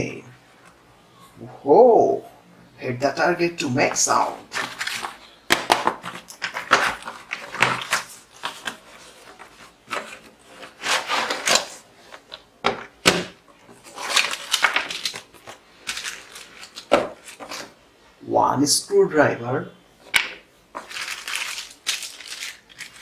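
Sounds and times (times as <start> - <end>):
plastic toy parts clattering: 4.5 - 17.7, 20.1 - 23.0.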